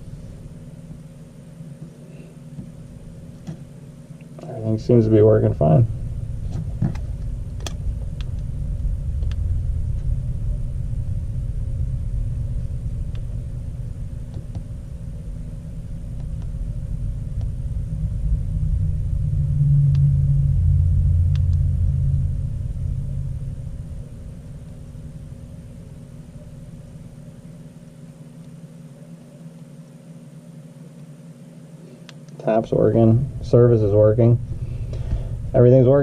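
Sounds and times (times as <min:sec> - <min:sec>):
low rumble: 0:04.5 - 0:28.2, 0:32.6 - 0:36.0.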